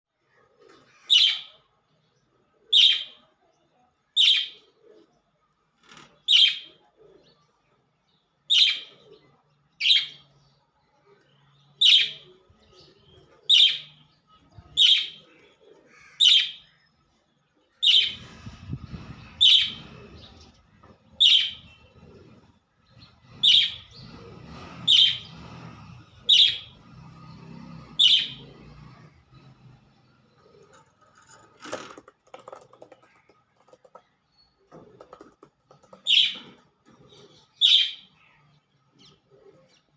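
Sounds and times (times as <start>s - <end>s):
budgerigar chirping: 21.2s - 21.8s, 26.3s - 26.8s, 28.0s - 28.4s.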